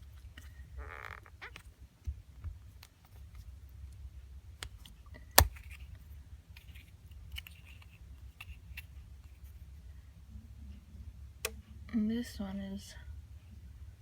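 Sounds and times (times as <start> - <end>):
small trinkets clicking and rustling: 5.5 - 9.5.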